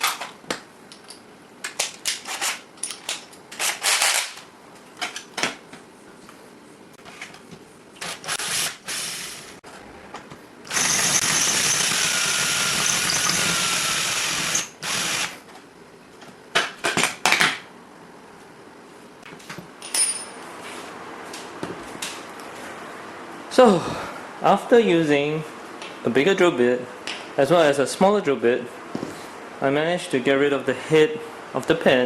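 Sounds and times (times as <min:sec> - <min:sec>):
electric drill drilling metal: 0:08.0 - 0:09.5, 0:10.7 - 0:15.3.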